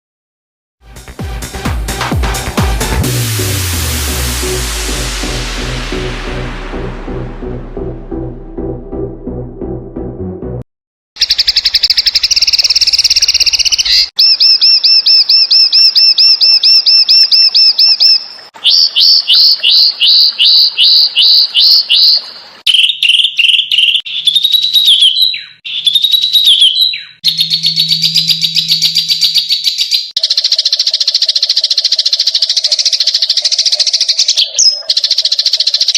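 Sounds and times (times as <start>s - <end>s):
songbird calls: 11.2s - 35.9s.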